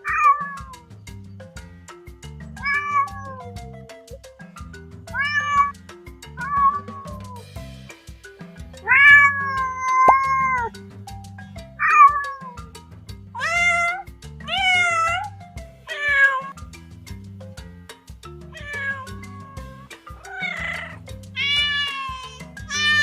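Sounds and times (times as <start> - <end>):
cat meowing: 0.0 - 0.6, 2.6 - 3.4, 5.2 - 5.7, 6.4 - 7.3, 8.8 - 10.7, 11.8 - 12.6, 13.4 - 15.2, 15.9 - 16.6, 18.5 - 23.0
background music with low beat: 0.7 - 23.0.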